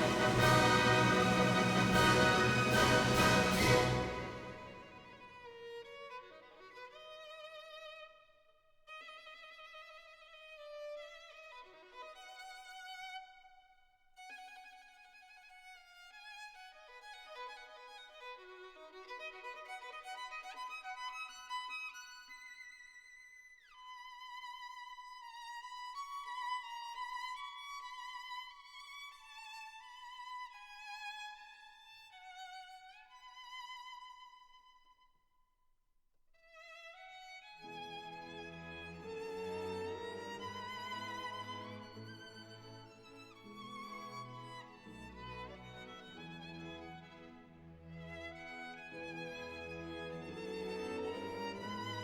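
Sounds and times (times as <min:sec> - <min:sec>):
solo violin melody: 0:00.0 - 0:08.1, 0:36.5 - 0:52.0.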